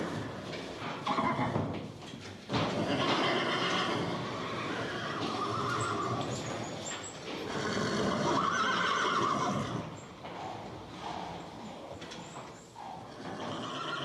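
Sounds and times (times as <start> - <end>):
horse whinnying: 2.8 - 6.7, 7.4 - 10.0, 12.9 - 14.0.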